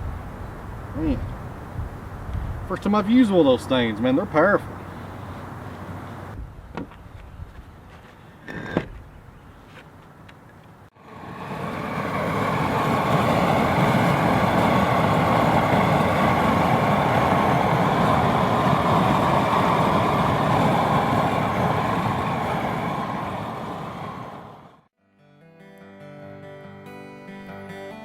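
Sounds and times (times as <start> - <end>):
propane torch burning: 11.0 - 24.8.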